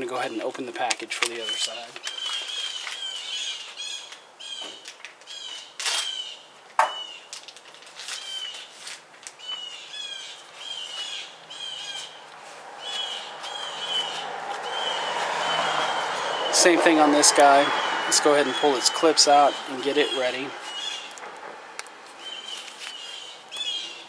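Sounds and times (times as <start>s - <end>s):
packaging clicking and crinkling: 0.4s - 3.3s, 7.3s - 9.6s, 21.0s - 23.7s
bird chirping: 1.3s - 7.3s, 9.4s - 21.4s, 22.2s - 24.0s.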